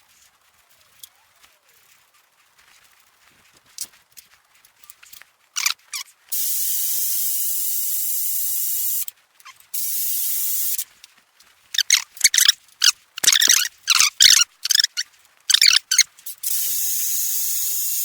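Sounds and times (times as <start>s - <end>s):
pressurised spray hissing: 6.3s - 9.1s, 9.7s - 10.8s, 16.2s - 18.0s.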